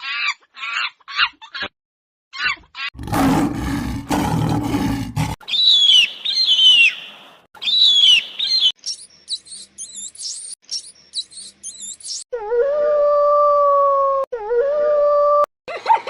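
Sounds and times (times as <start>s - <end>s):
big cat roaring: 3.0s - 5.4s
bird whistled calls sliding downward: 5.5s - 12.2s
quick high bird chirps: 5.5s - 12.2s.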